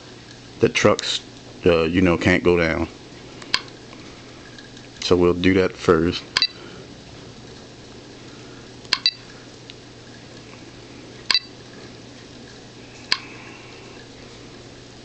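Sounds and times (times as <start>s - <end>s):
faint steady hum: 0.0s - 15.0s
touchscreen clicks: 8.9s - 9.2s.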